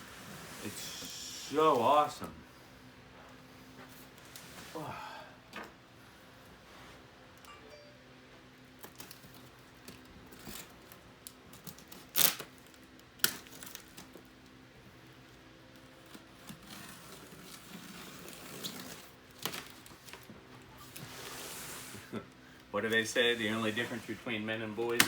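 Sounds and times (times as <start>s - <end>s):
packaging rustling and crinkling: 16.0s - 21.1s.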